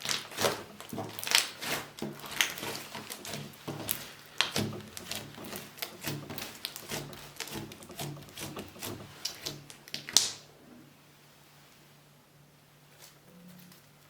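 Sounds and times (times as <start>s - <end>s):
slime squeezed by hand crackling: 0.0s - 5.2s.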